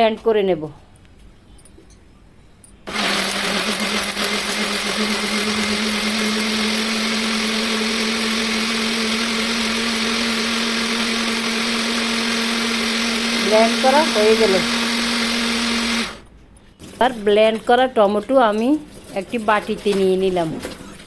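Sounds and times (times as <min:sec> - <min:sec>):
electric blender running: 0:02.9 - 0:17.7.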